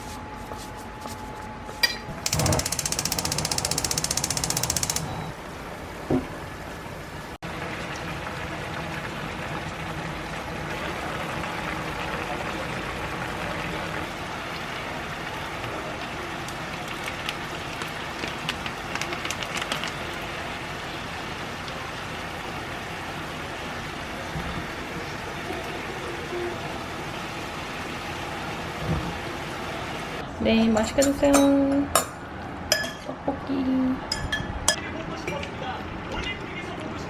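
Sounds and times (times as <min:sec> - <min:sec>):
food boiling in a pan: 0:04.9 - 0:30.2.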